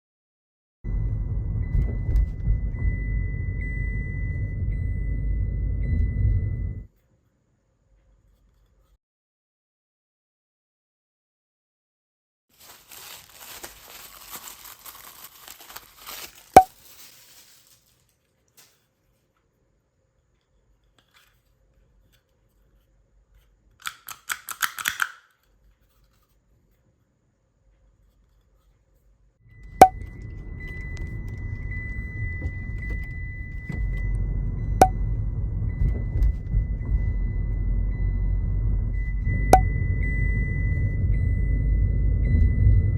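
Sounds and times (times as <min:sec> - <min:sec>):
faint steady high tone: 0:00.9 - 0:06.9, 0:29.5 - 0:42.9
low steady rumble: 0:00.9 - 0:06.9, 0:29.4 - 0:42.9.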